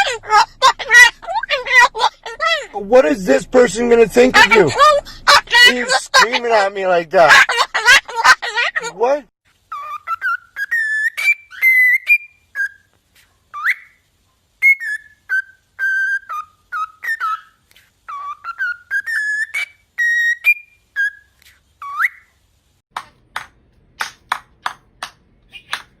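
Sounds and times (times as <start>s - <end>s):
parrot whistling: 9.7s - 12.9s, 13.5s - 14.0s, 14.6s - 22.3s.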